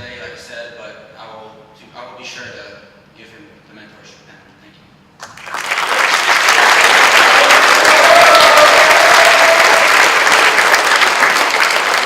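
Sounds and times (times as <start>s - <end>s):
audience applauding: 5.2s - 12.0s.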